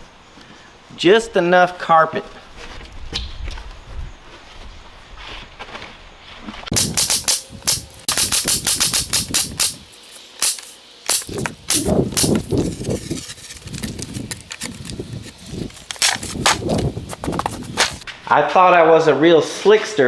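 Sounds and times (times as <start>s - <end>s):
staple gun snapping: 6.8s - 9.8s, 10.4s - 12.5s.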